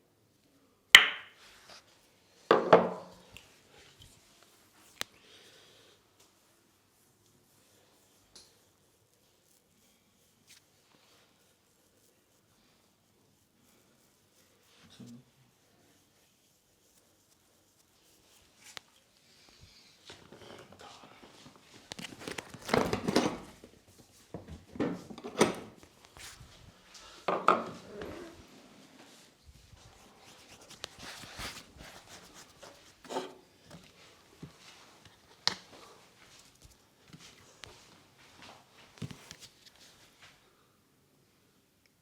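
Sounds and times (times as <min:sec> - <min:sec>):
slaps or knocks: 0:01.0 - 0:01.3
hands rubbing: 0:06.3 - 0:22.7, 0:25.7 - 0:40.2.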